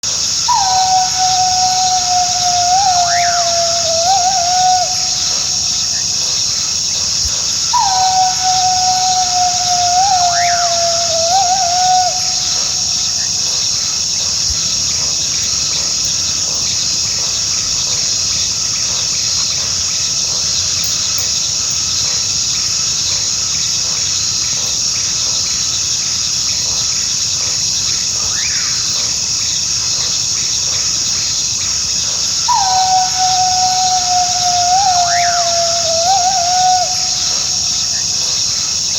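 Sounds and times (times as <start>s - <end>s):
insects chirring: 0.0s - 38.9s
coyote howling: 0.4s - 5.5s, 7.7s - 12.8s, 32.4s - 37.7s.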